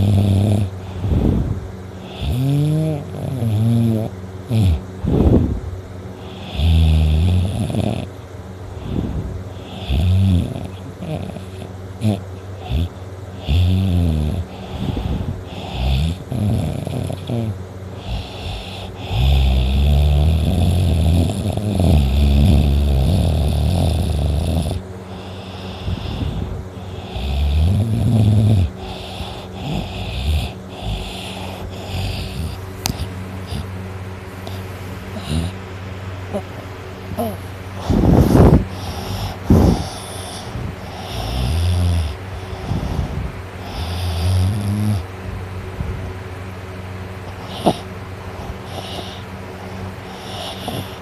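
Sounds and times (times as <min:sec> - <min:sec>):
boy snoring loudly: 0:00.0 - 0:05.6, 0:06.2 - 0:08.1, 0:08.8 - 0:33.7, 0:34.4 - 0:35.6, 0:37.2 - 0:45.1, 0:47.3 - 0:51.0
quiet breathing: 0:08.7 - 0:13.5, 0:14.3 - 0:19.8, 0:21.4 - 0:35.6, 0:37.1 - 0:45.1, 0:47.2 - 0:51.0.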